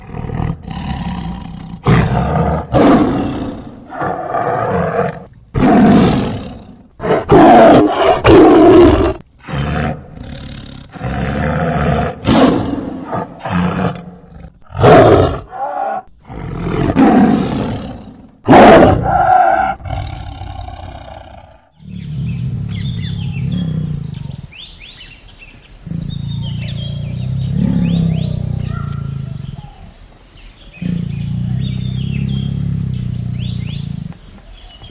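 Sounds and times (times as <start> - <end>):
low growling: 0.0 - 24.6, 25.8 - 30.0, 30.8 - 34.9
tiger roaring and snarling: 0.0 - 24.6, 25.8 - 30.0, 30.7 - 34.9
birds chirping: 19.1 - 34.9.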